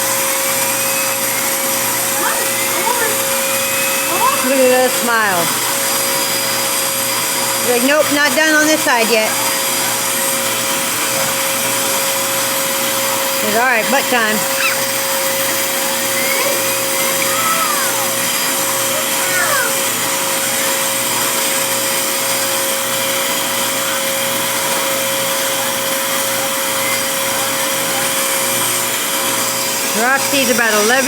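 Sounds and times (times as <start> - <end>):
vacuum cleaner running: 0.0 - 31.0.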